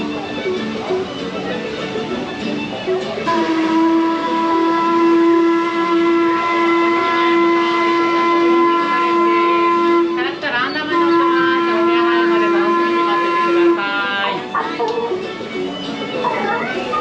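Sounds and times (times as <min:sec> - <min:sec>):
steam whistle blast: 0:03.2 - 0:14.1.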